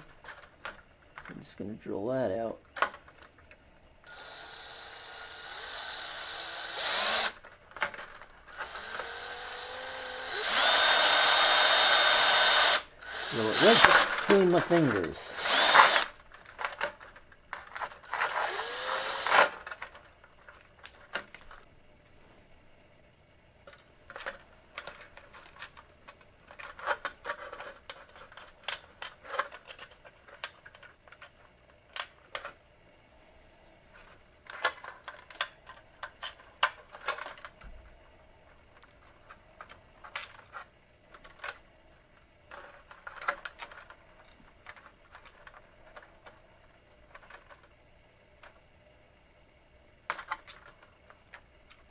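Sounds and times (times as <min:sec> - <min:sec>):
power drill drilling metal: 0:04.1 - 0:07.4, 0:08.5 - 0:16.2, 0:18.0 - 0:19.6
metal parts clicking: 0:23.7 - 0:32.6, 0:33.9 - 0:37.6, 0:42.5 - 0:46.4.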